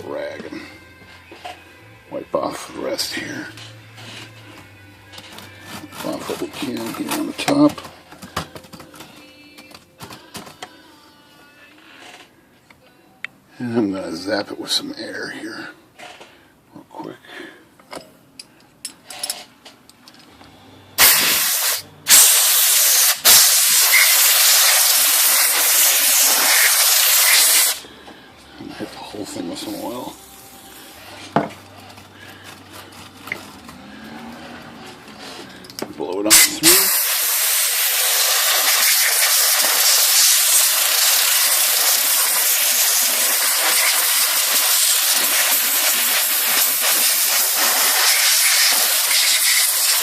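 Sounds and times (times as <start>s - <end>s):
compressed air blasting: 21.0s - 27.9s, 36.3s - 50.0s.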